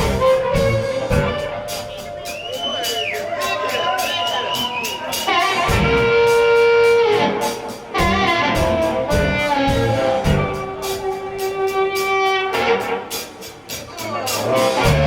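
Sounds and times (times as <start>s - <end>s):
rock band playing: 0.0s - 15.0s.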